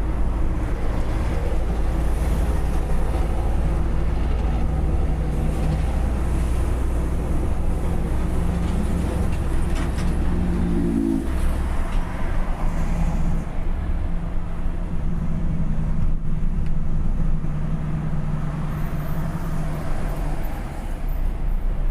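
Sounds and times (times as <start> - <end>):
loud engine drone: 8.6 - 12.0.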